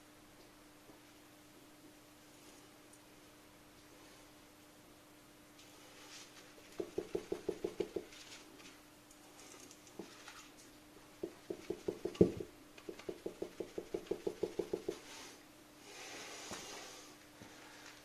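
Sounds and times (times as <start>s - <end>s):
shock absorber knocking: 6.7s - 8.1s, 11.2s - 15.0s.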